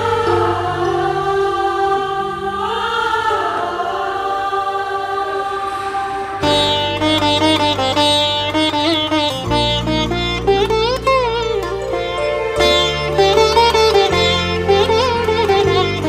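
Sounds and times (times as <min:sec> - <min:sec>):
choir-like voices over drone: 0:00.0 - 0:08.3
plucked-string instrument: 0:06.4 - 0:16.0.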